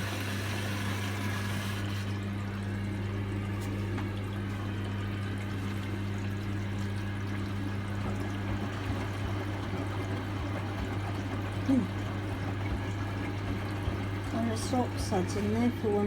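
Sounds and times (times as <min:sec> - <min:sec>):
washing machine hum: 0:00.0 - 0:16.0
water pouring into washing machine: 0:00.0 - 0:16.0.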